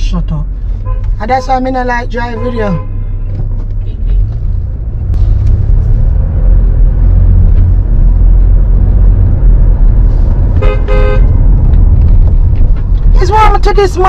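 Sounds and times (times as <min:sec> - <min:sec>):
car engine and road noise: 0:00.0 - 0:14.0
car horn beeping: 0:00.8 - 0:04.3, 0:10.6 - 0:11.5.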